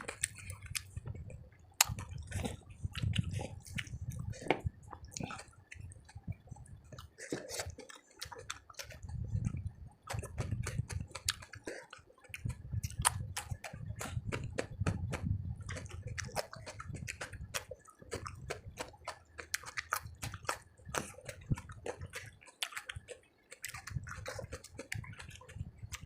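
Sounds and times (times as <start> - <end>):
person chewing food: 0.0 - 26.0
wet mouth clicks and smacks: 0.0 - 26.0.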